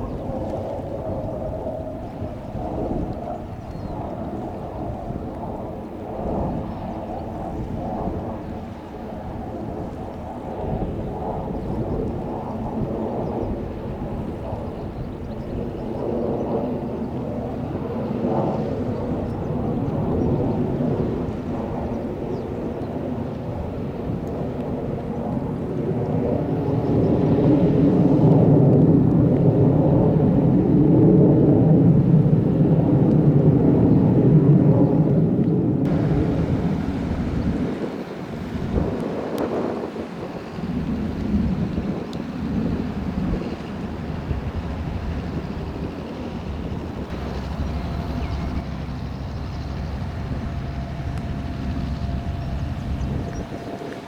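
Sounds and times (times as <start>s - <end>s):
boat engine rumbling: 35.9s - 39.1s, 40.0s - 54.0s.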